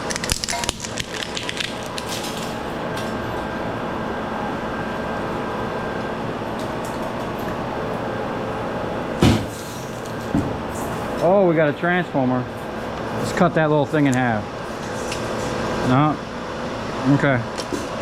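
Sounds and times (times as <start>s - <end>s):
steady machine hum: 0.0s - 18.0s.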